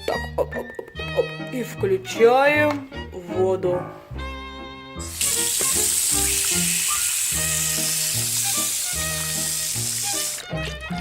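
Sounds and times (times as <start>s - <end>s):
background music: 0.0s - 11.0s
water running from tap: 5.0s - 10.6s.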